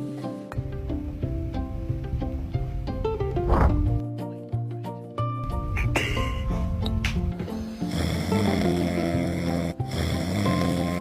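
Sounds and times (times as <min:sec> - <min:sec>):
background music: 0:00.0 - 0:11.0
snoring: 0:07.8 - 0:11.0.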